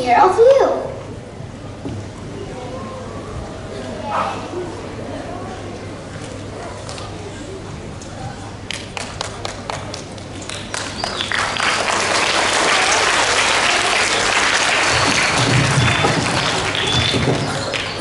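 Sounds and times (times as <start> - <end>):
audience applauding: 8.7 - 18.0.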